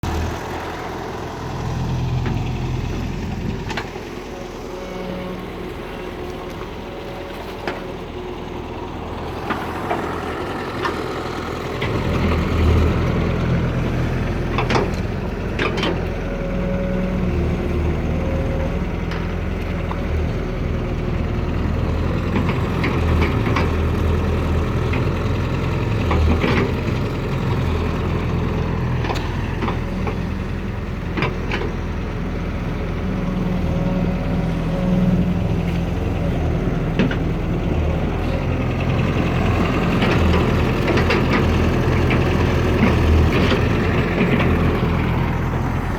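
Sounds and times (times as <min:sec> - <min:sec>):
excavator diesel engine: 0:00.0 - 0:45.9.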